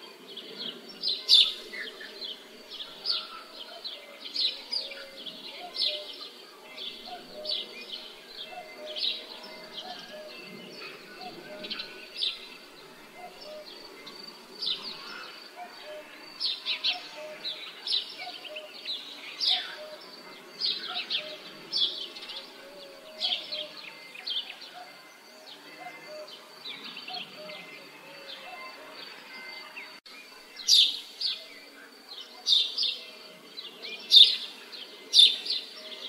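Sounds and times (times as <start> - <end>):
small birds chirping: 0.0 - 36.0.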